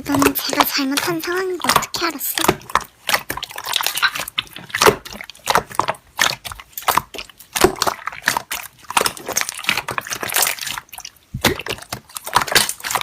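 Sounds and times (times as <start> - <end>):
slime squishing with wet clicks: 0.0 - 13.0.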